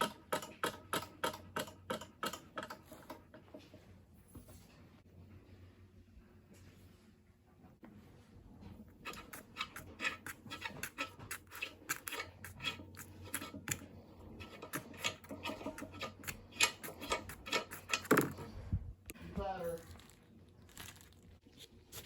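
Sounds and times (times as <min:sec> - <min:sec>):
hand tool scrubbing metal: 0:09.0 - 0:18.5.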